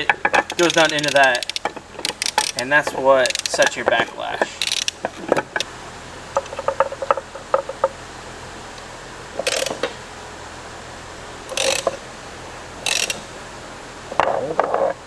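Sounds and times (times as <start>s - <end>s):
light metal clicks: 0.0s - 5.7s, 8.8s - 10.0s, 11.4s - 12.0s, 12.8s - 13.3s
metallic ratcheting strokes: 0.0s - 5.7s, 9.4s - 9.9s, 11.5s - 12.0s, 12.8s - 13.4s.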